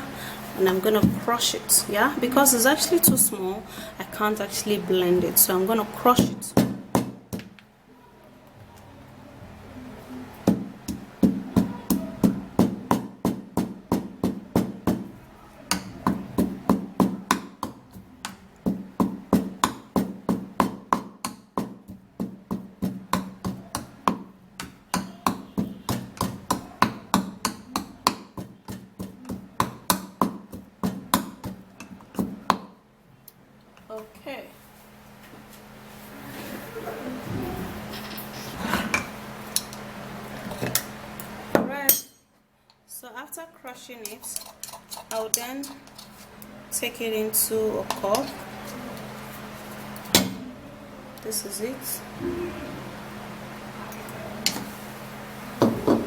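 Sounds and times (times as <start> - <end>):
pestle pounding seeds in mortar: 6.1 - 7.6, 10.4 - 32.8, 44.0 - 46.3.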